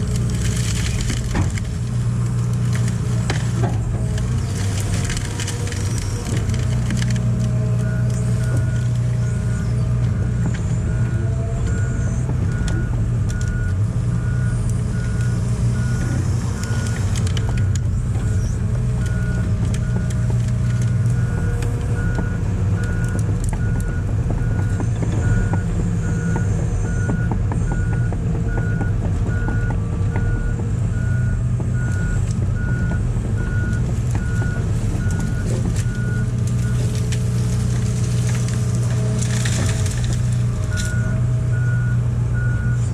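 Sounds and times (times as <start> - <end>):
cracks and crunches: 0.0 - 9.2, 16.0 - 23.9, 33.5 - 41.2
excavator diesel engine running: 0.0 - 42.9.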